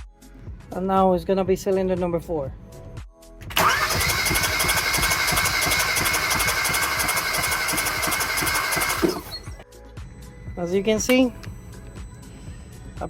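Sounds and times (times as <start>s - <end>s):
engine cranking on starter: 3.5s - 9.6s.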